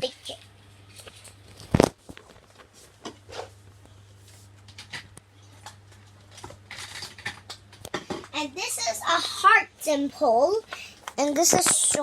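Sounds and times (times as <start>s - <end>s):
steady low hum: 0.0s - 12.0s
fidget toys rubbing and clicking: 11.0s - 12.0s.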